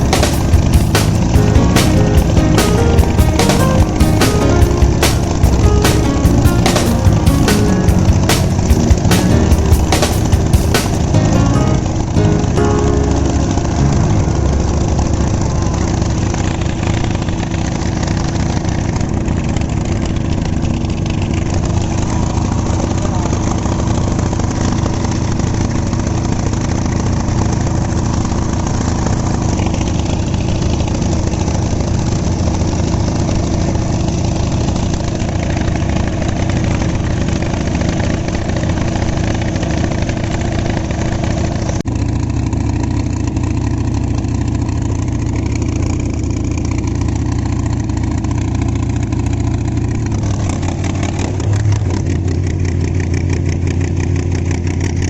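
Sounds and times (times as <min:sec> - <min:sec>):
boat engine droning: 0:00.0 - 0:26.7.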